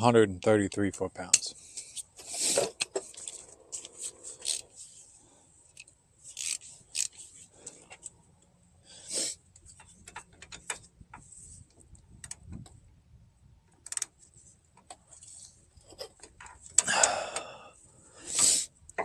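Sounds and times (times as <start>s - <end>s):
metal hand tools clicking: 6.4s - 7.1s.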